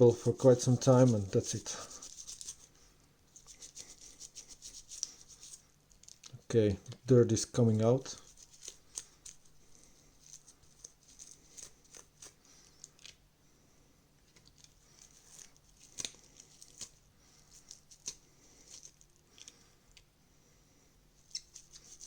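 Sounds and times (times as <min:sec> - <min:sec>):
scratchy scrubbing: 0:00.2 - 0:02.8, 0:03.4 - 0:05.6, 0:21.3 - 0:22.0.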